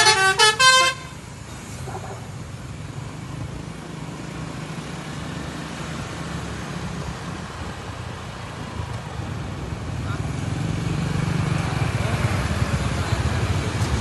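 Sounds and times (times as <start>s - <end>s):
heavy vehicle engine rumble: 0.0s - 14.0s
traffic and tyre noise: 0.0s - 14.0s.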